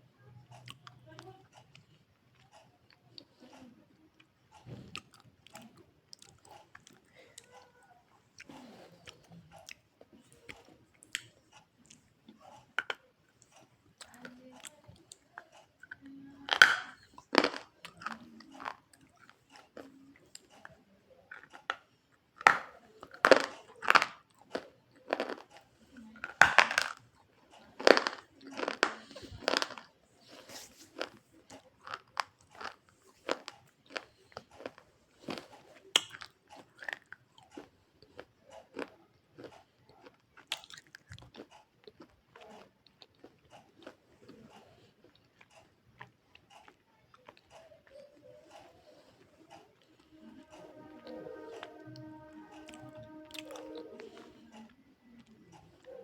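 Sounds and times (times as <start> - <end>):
chewing and crunching food: 0.0 - 56.0.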